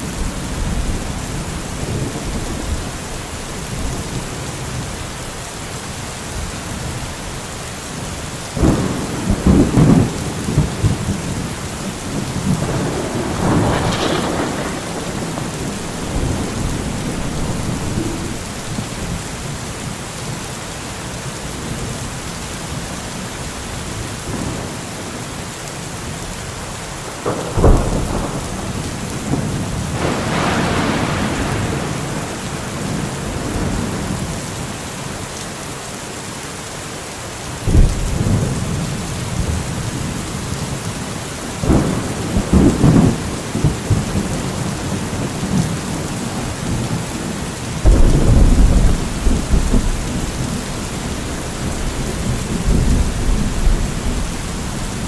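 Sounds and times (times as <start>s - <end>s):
thunder rumbling: 0.0s - 5.4s, 8.6s - 19.7s, 27.1s - 34.7s, 37.6s - 55.0s
steady rain falling: 0.0s - 55.0s.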